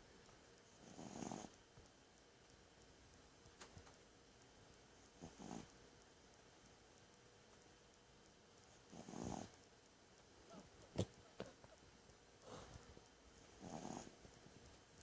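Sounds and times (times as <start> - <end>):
pet snoring softly: 0.7 - 1.6, 5.1 - 5.8, 8.8 - 9.6, 13.6 - 14.2.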